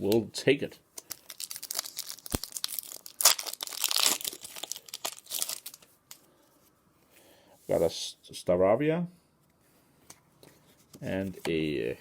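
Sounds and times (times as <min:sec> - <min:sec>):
foil wrapper crinkling: 0:01.0 - 0:06.2.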